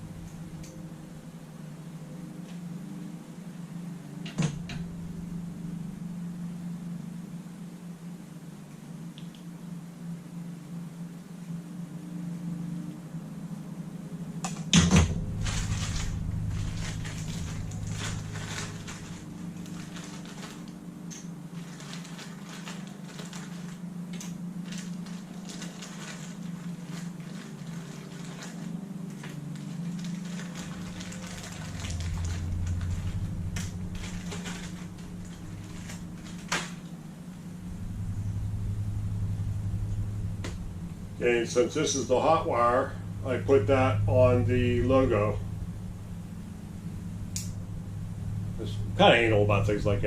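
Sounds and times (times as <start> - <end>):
steady low hum: 0.0 - 50.0
wire rustling: 14.4 - 50.0.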